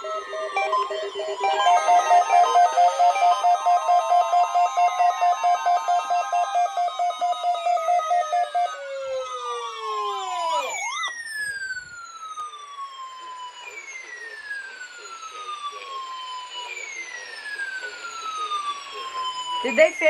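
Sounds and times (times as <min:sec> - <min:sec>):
rapid pulsing electronic beep: 0:00.0 - 0:08.7
long falling whistling tones: 0:00.0 - 0:19.8.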